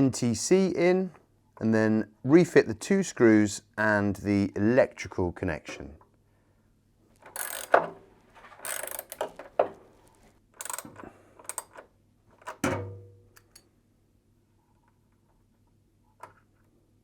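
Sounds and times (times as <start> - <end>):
socket wrench ratcheting: 7.2 - 8.0, 8.6 - 9.6, 10.6 - 11.8.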